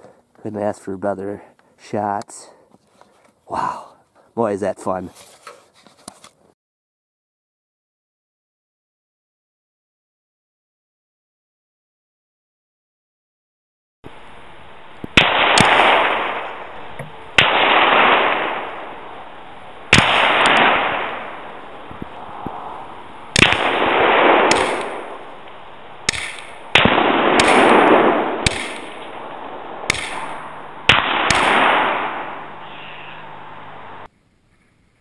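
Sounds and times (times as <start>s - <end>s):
rush of noise: 14.1s - 34.1s
sharp cracks: 15.0s - 34.1s.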